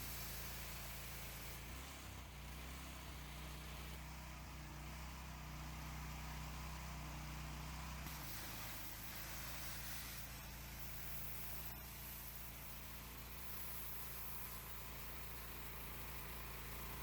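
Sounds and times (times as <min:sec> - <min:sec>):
pressure washer engine running: 0:00.0 - 0:17.0
high hiss: 0:08.0 - 0:15.4.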